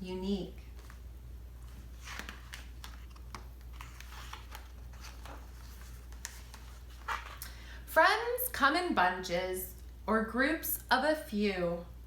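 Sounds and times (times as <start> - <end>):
paper rustling: 0.7 - 7.4.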